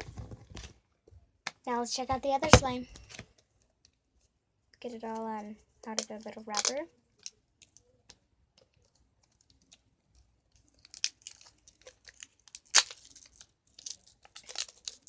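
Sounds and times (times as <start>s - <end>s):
plastic wrapper crinkling: 5.9s - 15.0s.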